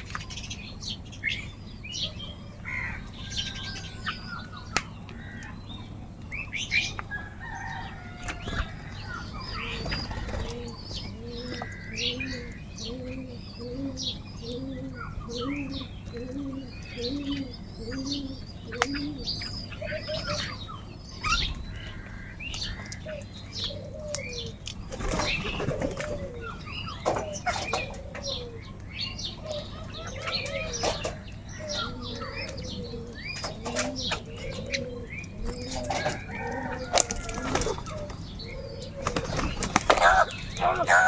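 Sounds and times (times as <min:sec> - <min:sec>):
crows calling: 0:02.2 - 0:05.7, 0:06.8 - 0:24.6, 0:35.8 - 0:41.0
wings flapping: 0:09.6 - 0:10.8, 0:39.0 - 0:41.0.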